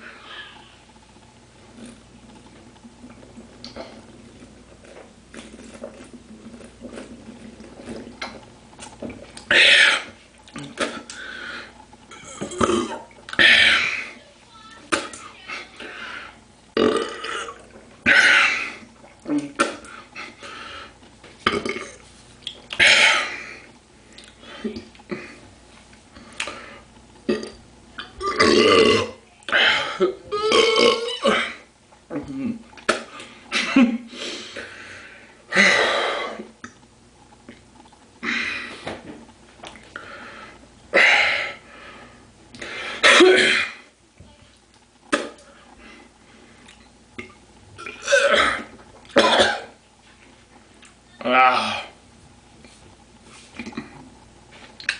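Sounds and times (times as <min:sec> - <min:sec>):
person gulping a drink: 0:01.7 - 0:14.1, 0:16.8 - 0:20.4, 0:21.0 - 0:25.4, 0:27.2 - 0:33.3, 0:46.6 - 0:49.7, 0:53.6 - 0:54.2
man belching loudly: 0:16.8 - 0:18.5, 0:28.2 - 0:29.2, 0:30.3 - 0:31.6.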